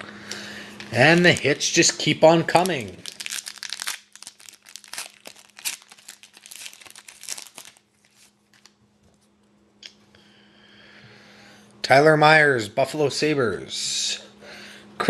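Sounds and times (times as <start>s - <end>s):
foil wrapper crinkling and tearing: 0.8s - 8.8s.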